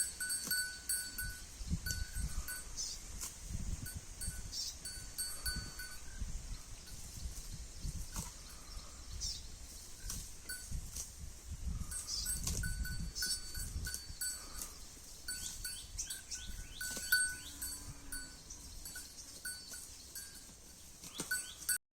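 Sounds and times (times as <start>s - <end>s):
cow chewing grass: 0.0s - 8.8s, 9.6s - 21.8s
bird-like chirps: 4.5s - 4.9s, 12.0s - 12.4s, 14.2s - 17.6s, 21.0s - 21.8s
bell-like tones: 15.3s - 20.6s.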